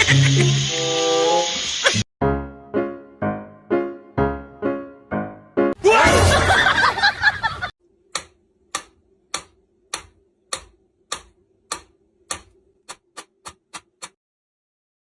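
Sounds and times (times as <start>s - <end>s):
sharp ticks: 8.1s - 14.2s.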